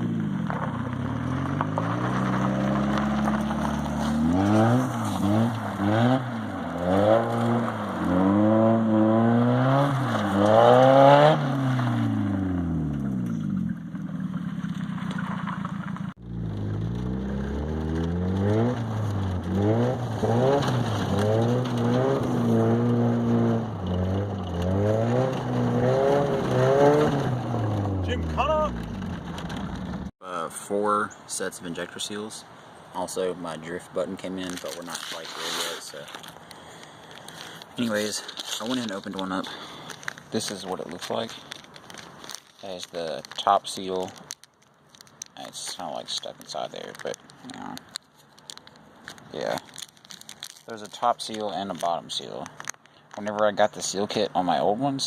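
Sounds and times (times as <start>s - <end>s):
car engine revving: 0.0s - 30.1s.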